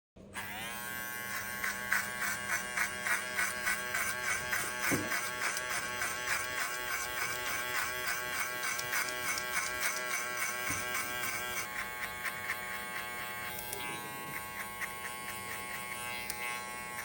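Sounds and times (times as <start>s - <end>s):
electric hair clippers buzzing: 0.3s - 17.0s.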